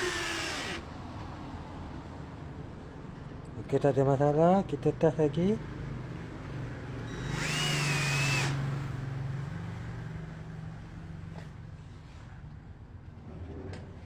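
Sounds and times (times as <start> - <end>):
cordless drill whining: 0.0 - 0.8, 7.1 - 8.6.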